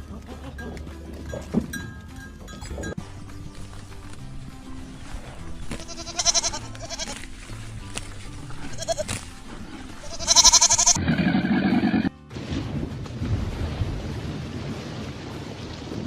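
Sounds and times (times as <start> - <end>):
soft background music: 0.0 - 13.2
goat bleating: 5.6 - 12.1.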